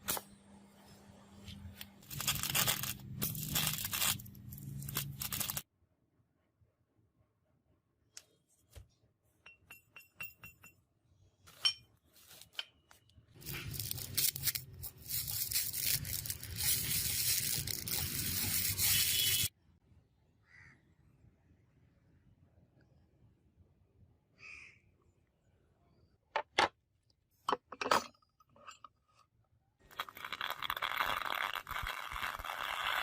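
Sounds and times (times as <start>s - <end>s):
abrasive tool grinding iron: 29.9s - 33.0s.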